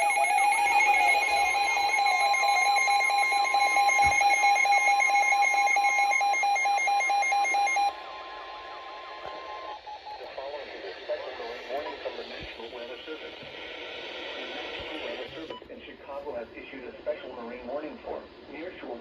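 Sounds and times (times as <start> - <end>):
steady high beep: 0.0 - 7.9
alternating electronic alarm: 0.0 - 8.0.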